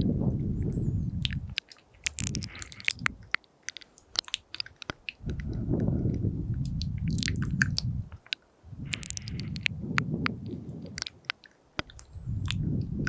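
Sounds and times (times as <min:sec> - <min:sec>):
low muffled rumble: 0:00.0 - 0:03.3, 0:05.2 - 0:11.1, 0:11.9 - 0:13.0
wet mouth clicks and smacks: 0:00.7 - 0:05.6, 0:06.5 - 0:12.7.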